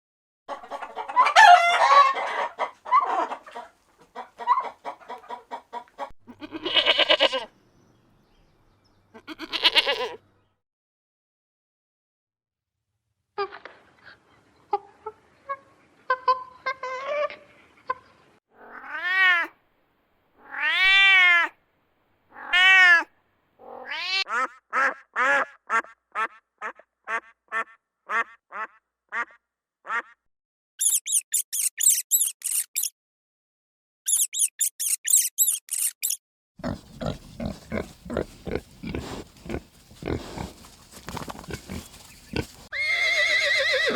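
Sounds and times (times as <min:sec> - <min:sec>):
high squeaks: 0:30.8 - 0:32.9, 0:34.1 - 0:36.2
animal calls: 0:34.1 - 0:43.9.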